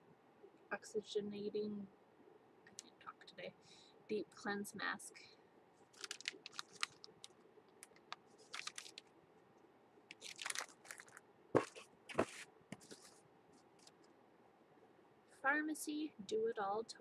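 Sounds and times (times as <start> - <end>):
packaging crinkling and rustling: 5.9 - 9.1, 10.1 - 13.2.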